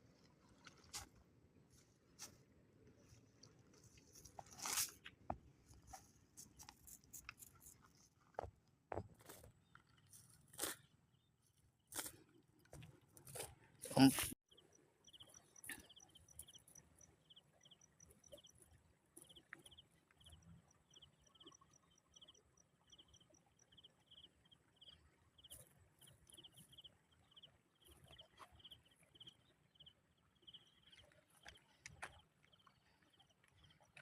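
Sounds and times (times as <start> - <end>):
insect trilled chirps: 14.5 - 29.9
higher insect ticking call: 14.5 - 30.8.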